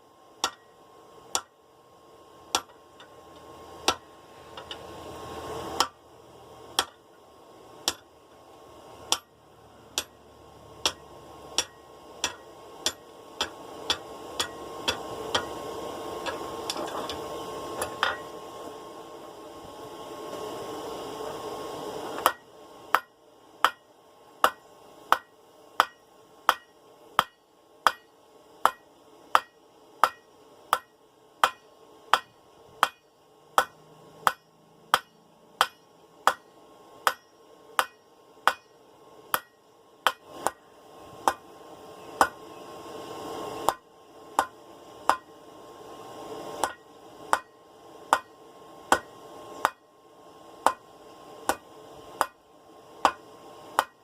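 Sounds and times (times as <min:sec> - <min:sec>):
hammer striking steel on anvil: 0:00.4 - 0:01.5, 0:02.5 - 0:03.2, 0:03.8 - 0:04.8, 0:05.8 - 0:06.0, 0:06.8 - 0:07.0, 0:07.8 - 0:08.1, 0:09.1 - 0:10.2, 0:10.8 - 0:15.6, 0:22.2 - 0:40.6, 0:41.2 - 0:41.4, 0:42.2 - 0:42.4, 0:44.4 - 0:45.3, 0:46.6 - 0:49.8, 0:50.6 - 0:50.8, 0:51.4 - 0:52.4, 0:53.0 - 0:53.2, 0:53.8 - 0:54.0.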